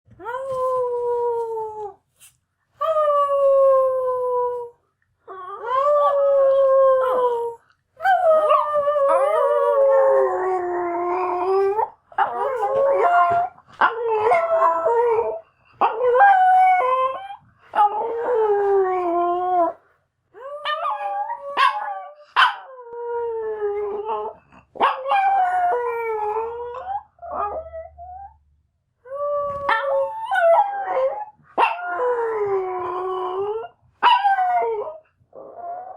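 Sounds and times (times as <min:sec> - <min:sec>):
dogs howling: 0:05.4 - 0:19.7.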